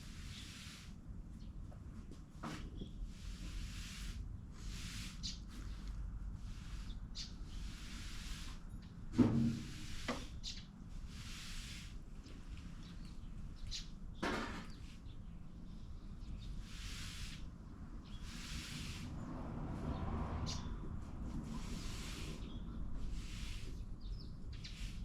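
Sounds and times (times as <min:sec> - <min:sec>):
bird chirps: 0:12.8 - 0:14.2.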